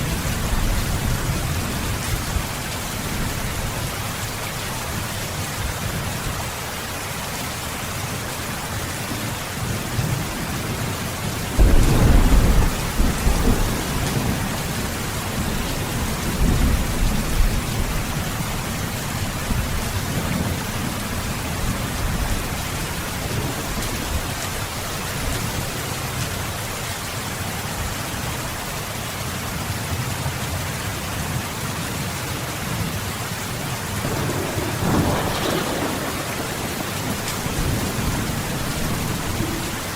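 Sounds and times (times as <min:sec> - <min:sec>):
steady rain falling: 0:00.0 - 0:39.9
thunder rolling: 0:11.5 - 0:18.6, 0:34.0 - 0:39.9.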